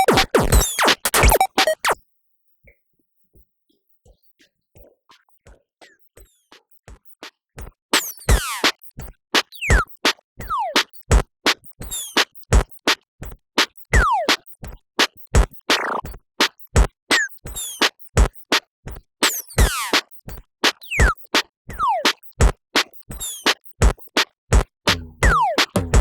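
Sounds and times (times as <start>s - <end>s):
synth bleeps falling in pitch: 0.0s - 2.0s
kick drum: 4.8s - 5.6s, 6.9s - 11.7s, 12.4s - 13.4s, 14.0s - 26.0s.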